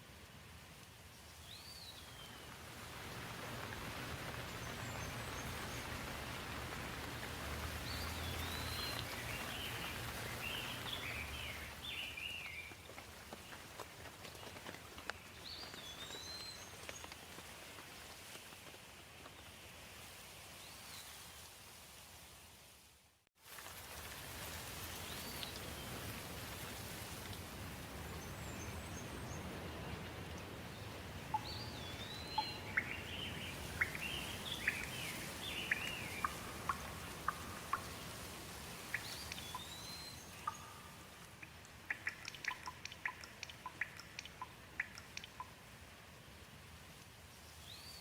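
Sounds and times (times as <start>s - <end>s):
steady rain: 0.0s - 48.0s
songbirds singing: 1.2s - 2.6s, 3.3s - 17.2s, 27.9s - 45.6s
close sharp drips: 31.2s - 45.7s.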